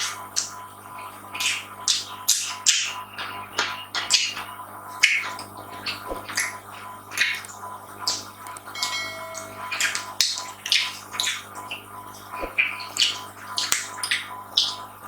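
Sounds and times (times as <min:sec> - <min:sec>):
faint steady hum: 0:00.0 - 0:15.0
short ringing clink: 0:08.8 - 0:10.1.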